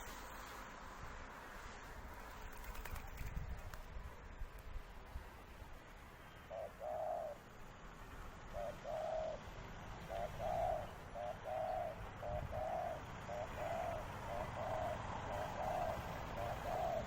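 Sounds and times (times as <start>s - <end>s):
dove cooing: 6.5s - 7.4s, 8.5s - 17.0s.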